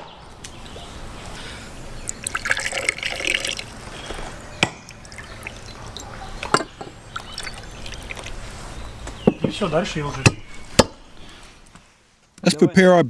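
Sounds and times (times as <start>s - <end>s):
liquid pouring and splashing: 2.0s - 4.0s, 4.9s - 8.5s.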